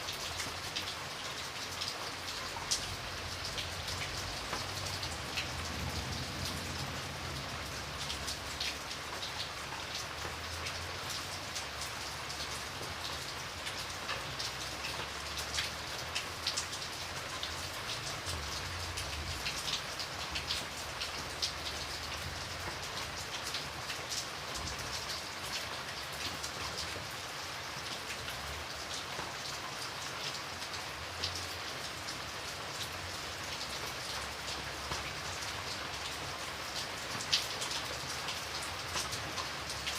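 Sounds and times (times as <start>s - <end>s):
rain hiss: 0.0s - 39.9s
raindrops ticking on hard surface: 0.1s - 39.9s.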